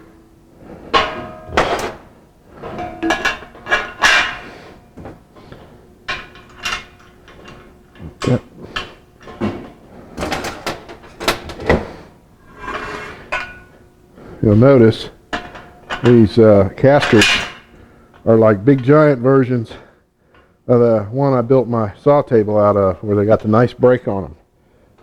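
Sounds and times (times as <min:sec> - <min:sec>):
metal scaffold parts clanking: 0:00.9 - 0:04.6, 0:06.1 - 0:11.8, 0:15.3 - 0:17.7.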